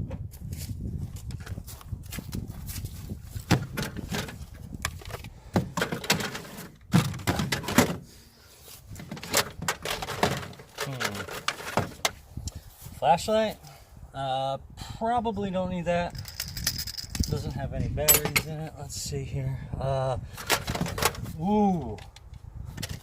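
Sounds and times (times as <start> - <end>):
objects knocking and clattering: 3.5 - 8.0, 9.0 - 12.2, 20.4 - 21.2.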